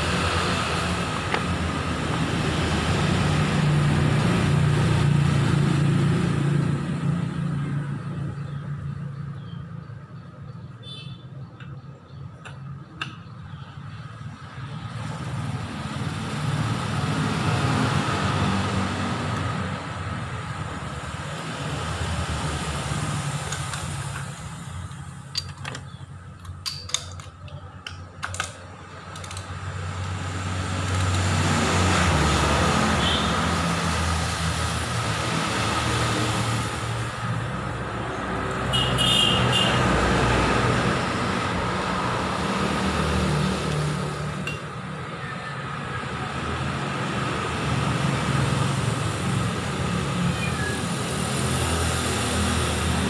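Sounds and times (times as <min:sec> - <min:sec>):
motorcycle engine rumbling: 0:23.4 - 0:31.4
sharp clicks: 0:30.8 - 0:31.3.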